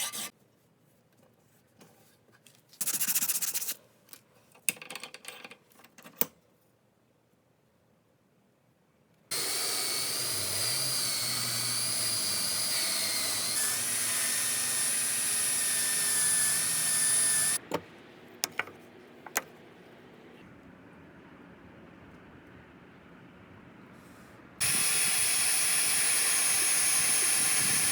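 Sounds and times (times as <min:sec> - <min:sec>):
power tool motor whining: 0:09.3 - 0:17.6, 0:24.6 - 0:27.9.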